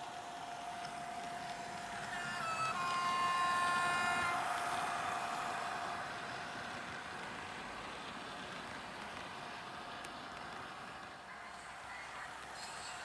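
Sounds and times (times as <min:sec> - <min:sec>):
electric locomotive horn: 0:02.1 - 0:05.4.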